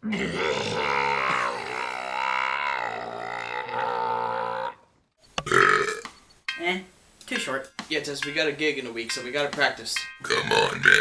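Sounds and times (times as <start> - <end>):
long human belch: 0.0 - 4.8, 5.4 - 6.0, 10.2 - 11.0.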